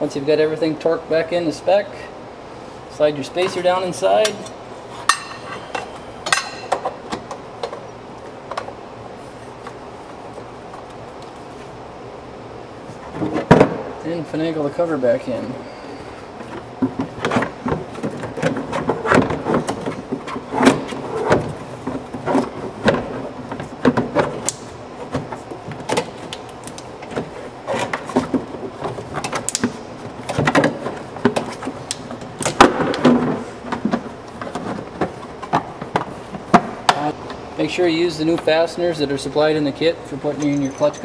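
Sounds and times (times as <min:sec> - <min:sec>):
clunks clicks and scrapes of cover: 0:16.4 - 0:37.1.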